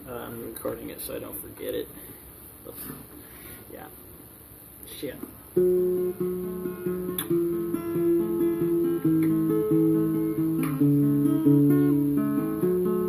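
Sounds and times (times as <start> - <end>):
acoustic guitar picked riff: 5.5 - 13.0.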